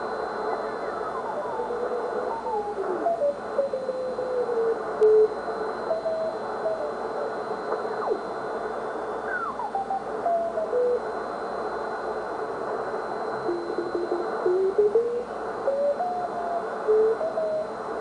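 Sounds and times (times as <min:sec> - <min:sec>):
radio band noise hiss: 0:00.0 - 0:18.0
morse code whistling tones: 0:13.1 - 0:17.8.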